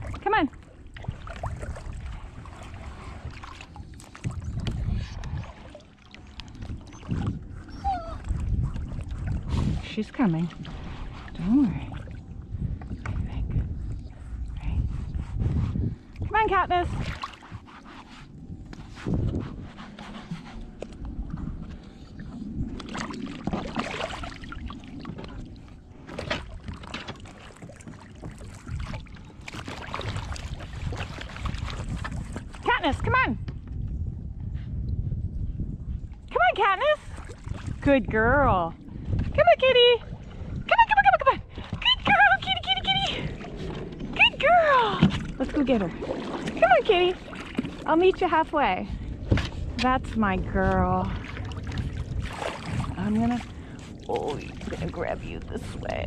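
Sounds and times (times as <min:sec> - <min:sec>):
water sloshing around kayak: 0:00.0 - 0:56.0
wind rumble on microphone: 0:00.0 - 0:56.0
knocks against hull: 0:44.9 - 0:45.4.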